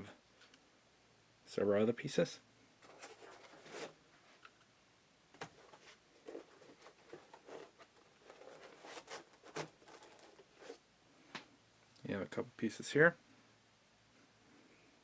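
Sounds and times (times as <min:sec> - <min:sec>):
light handling clicks and rustles: 0:05.3 - 0:10.8.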